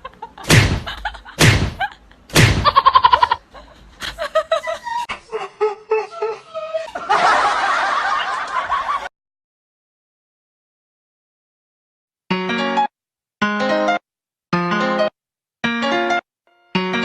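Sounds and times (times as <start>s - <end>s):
people laughing: 0.0s - 9.1s.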